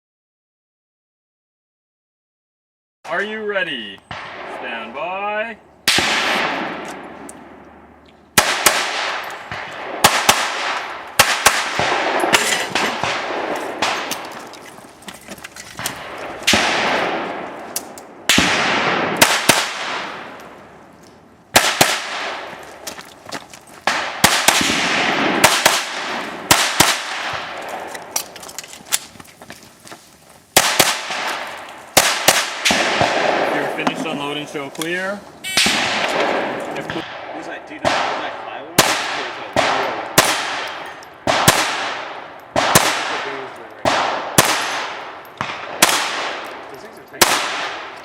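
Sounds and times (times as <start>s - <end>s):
rifle gunshots echoing: 4.0s - 14.8s, 15.7s - 20.9s, 21.5s - 22.8s, 23.8s - 28.4s, 30.6s - 48.0s
metallic ringing of steel targets: 12.0s - 14.2s.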